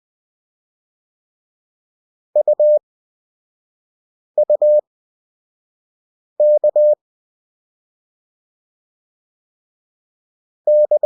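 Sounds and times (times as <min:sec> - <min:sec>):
morse code beeps: 0:02.4 - 0:02.8, 0:04.4 - 0:04.8, 0:06.4 - 0:07.0, 0:10.7 - 0:11.0.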